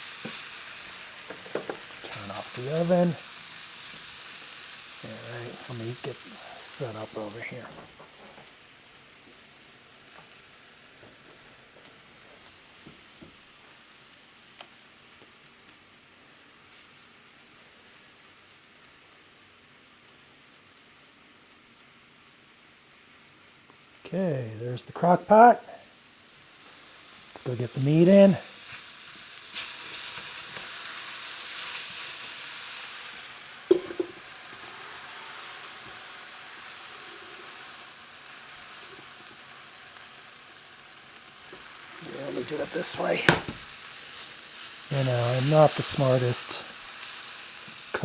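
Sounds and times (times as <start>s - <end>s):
meat sizzling in a frying pan: 0.0s - 48.0s
sharp knocks: 43.3s - 43.7s.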